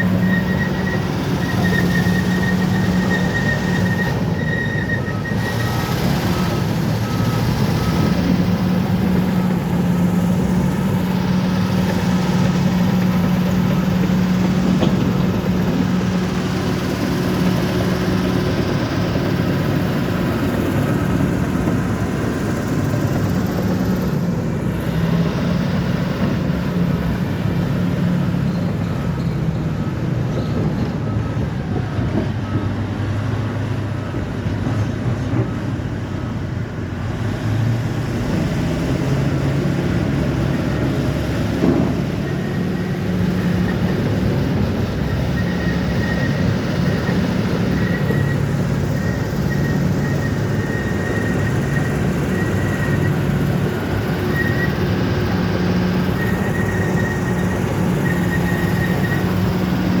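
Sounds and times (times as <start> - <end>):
bulldozer diesel engine running: 0.0 - 60.0.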